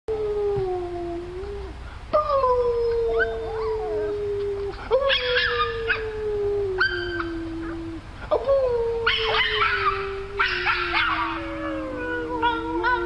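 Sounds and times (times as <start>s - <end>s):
dog howling: 0.1s - 8.0s, 8.8s - 13.0s.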